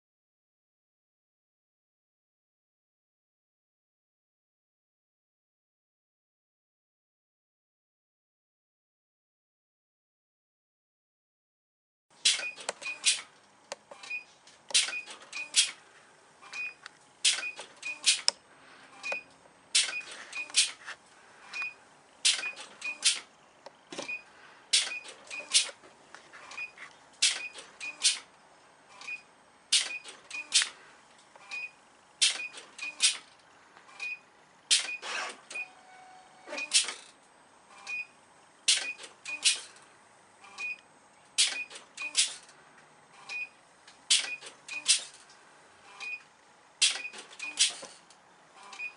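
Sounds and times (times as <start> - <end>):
sharp mechanical clicks: 12.2 - 15.8, 16.4 - 18.4, 19.0 - 20.8, 21.5 - 24.1, 24.7 - 25.8, 26.5 - 28.3, 29.0 - 35.7, 36.5 - 38.0, 38.6 - 42.6, 43.2 - 45.3, 45.9 - 48.9.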